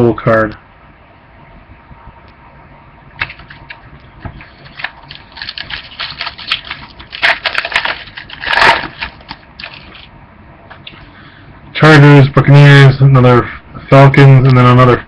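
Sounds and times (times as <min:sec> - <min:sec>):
foil wrappers crinkling: 0:03.2 - 0:10.1.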